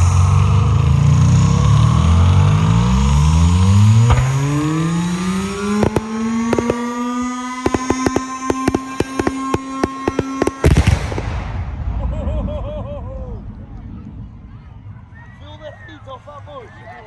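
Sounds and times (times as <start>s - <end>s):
low engine-like drone: 0.0s - 17.0s
firework cracks: 5.6s - 14.0s.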